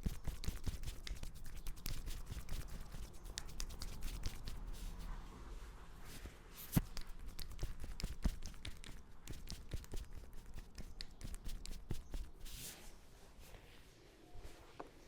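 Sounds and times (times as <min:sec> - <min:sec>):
fingers rustling through hair: 0:00.0 - 0:05.2, 0:06.0 - 0:13.8.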